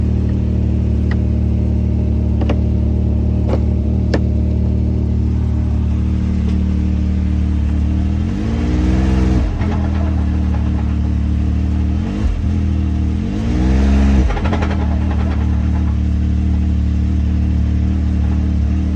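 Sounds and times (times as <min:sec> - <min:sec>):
engine idling and revving: 0:00.0 - 0:18.9.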